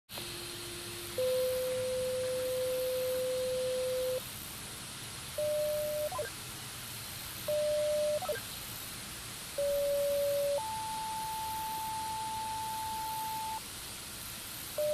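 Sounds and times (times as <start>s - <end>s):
steady low electronic tone: 0.2s - 4.2s, 5.3s - 6.4s, 7.4s - 8.4s, 9.5s - 13.6s
short electronic beeps: 1.2s - 4.2s, 5.4s - 6.3s, 7.5s - 8.4s, 9.6s - 13.6s.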